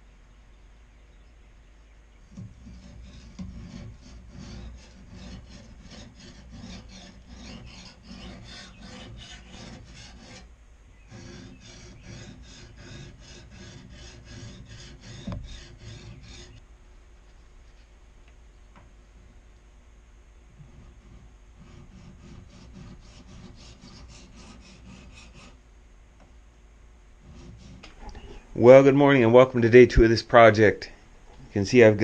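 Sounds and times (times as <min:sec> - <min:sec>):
rasping hand tool strokes: 0:02.3 - 0:10.5, 0:11.1 - 0:16.6, 0:20.6 - 0:25.6, 0:27.2 - 0:28.4.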